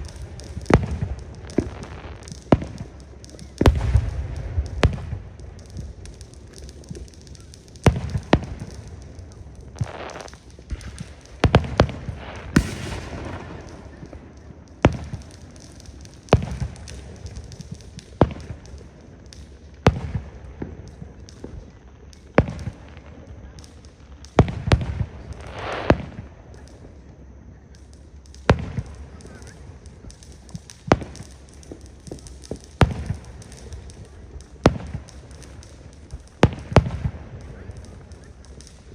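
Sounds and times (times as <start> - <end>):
fireworks shells bursting: 9.7 - 18.8.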